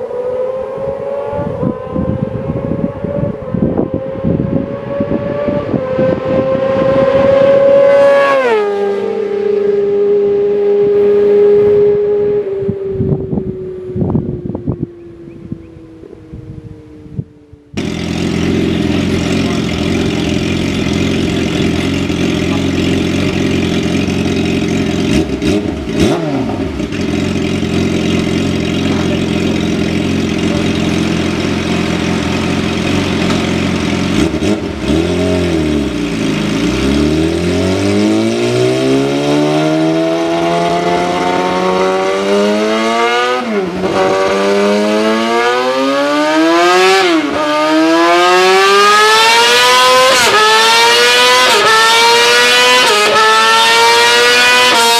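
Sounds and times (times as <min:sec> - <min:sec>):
motorcycle engine accelerating: 0:00.0 - 0:54.9.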